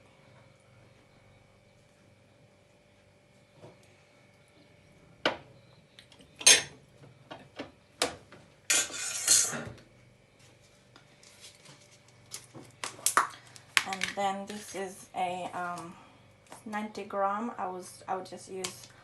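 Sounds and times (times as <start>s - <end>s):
crinkly rustling: 10.6s - 12.8s.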